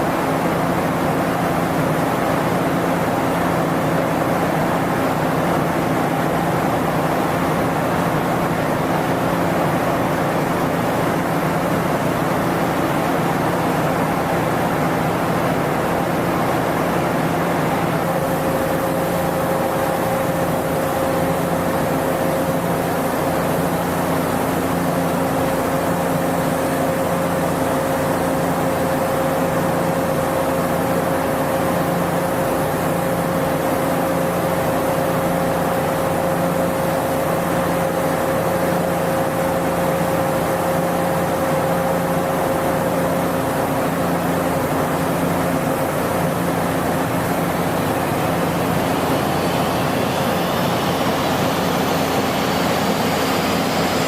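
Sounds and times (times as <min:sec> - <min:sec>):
machinery drone: 0:47.4 - 0:54.0.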